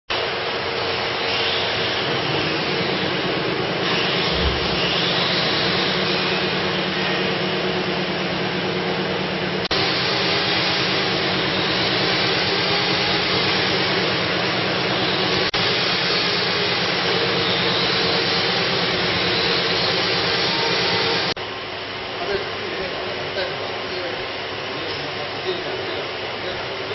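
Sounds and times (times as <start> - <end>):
bag making machine running: 2.0 - 21.4.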